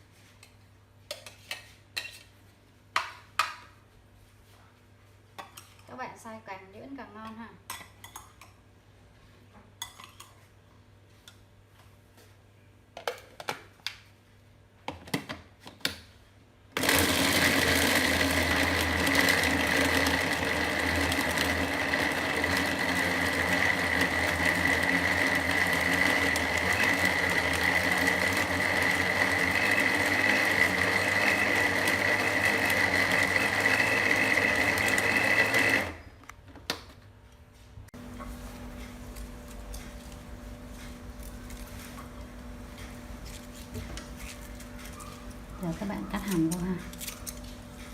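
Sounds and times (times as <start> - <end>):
food grinder motor whining: 16.8 - 36.0.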